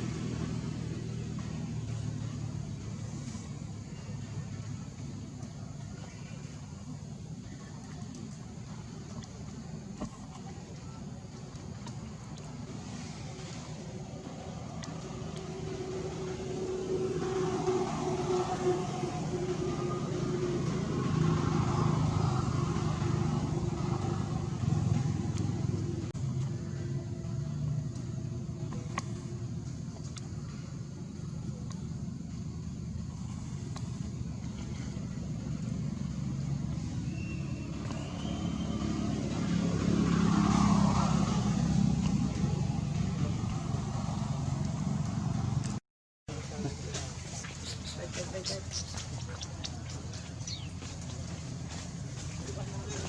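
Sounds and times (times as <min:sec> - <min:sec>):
vehicle engine running: 0:00.0 - 0:45.8, 0:46.4 - 0:53.0.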